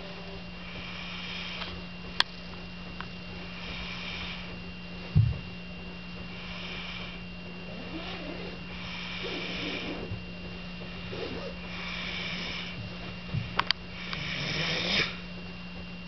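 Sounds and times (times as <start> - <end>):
steady electrical hum: 0.0 - 16.0
low thump: 5.2 - 5.5
man snoring: 6.4 - 10.2, 11.0 - 12.8, 14.0 - 15.2.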